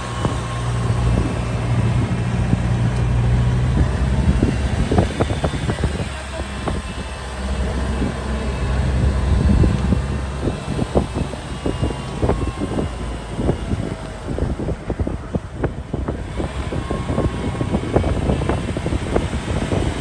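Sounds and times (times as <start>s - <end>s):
jeep engine running: 0.0s - 20.0s.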